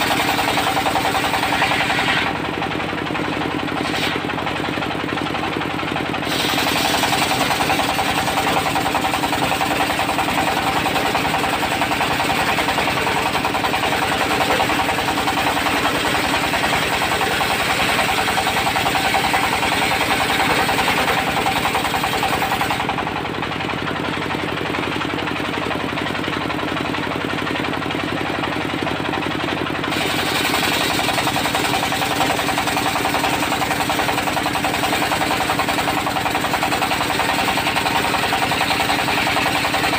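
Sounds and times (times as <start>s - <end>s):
saw blade cutting wood: 0.0s - 2.6s, 3.7s - 4.5s, 6.2s - 23.0s, 29.9s - 33.2s
diesel engine running: 0.0s - 39.9s.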